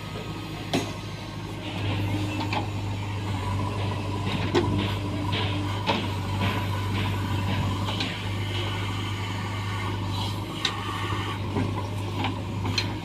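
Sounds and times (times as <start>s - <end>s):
diesel engine running: 0.0s - 13.0s
sharp knocks: 3.8s - 8.8s.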